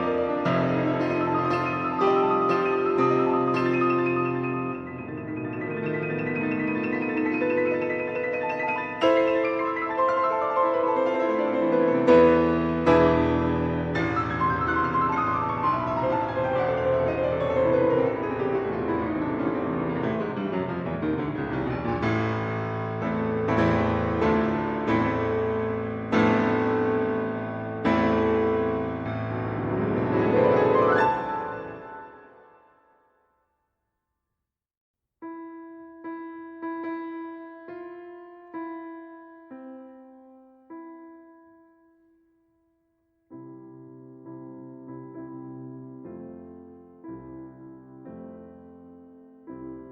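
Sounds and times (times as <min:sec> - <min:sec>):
piano music: 0:00.0 - 0:33.2, 0:43.3 - 0:49.9.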